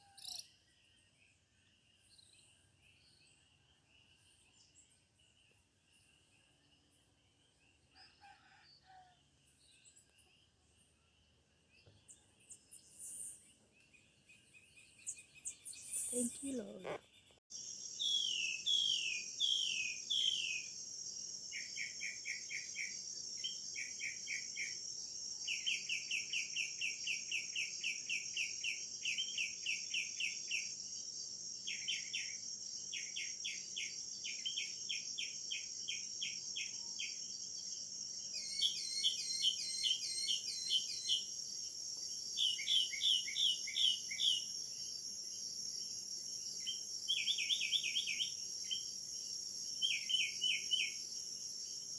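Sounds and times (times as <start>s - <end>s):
animal chirping calls and trills: 14.2s - 17.4s, 38.3s - 41.3s
high insect drone: 17.5s - 51.9s.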